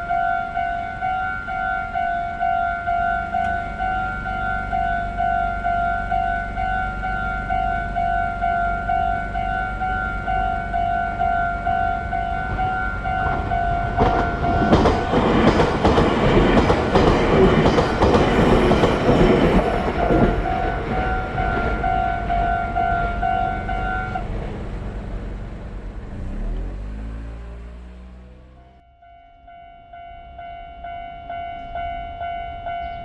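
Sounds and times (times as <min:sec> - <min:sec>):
level crossing bell clanging: 0:00.0 - 0:16.2, 0:17.2 - 0:24.2, 0:29.0 - 0:33.0
train wheels clattering over rails: 0:12.4 - 0:22.6.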